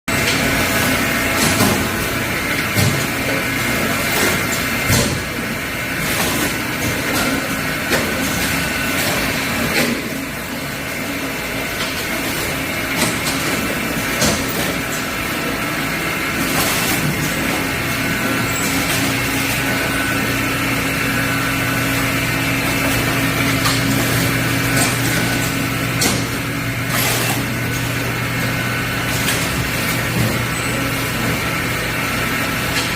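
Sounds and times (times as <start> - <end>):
machinery humming: 0.1 - 32.9
machine knocks and clanks: 1.2 - 5.4, 11.7 - 15.2, 22.2 - 31.6.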